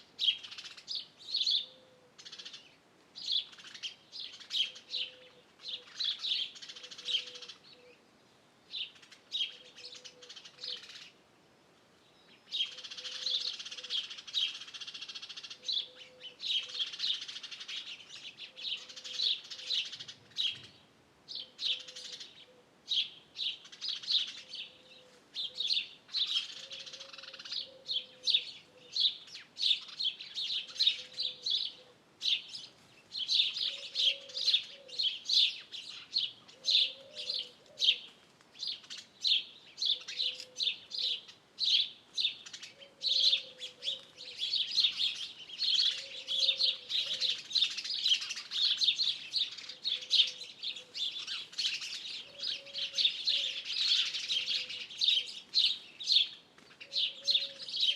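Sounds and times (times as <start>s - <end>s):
songbirds chirping and singing: 0.0s - 11.2s, 12.0s - 57.9s
low bird call: 1.4s - 2.6s, 4.5s - 8.0s, 21.4s - 23.6s, 29.8s - 38.1s, 39.8s - 56.2s.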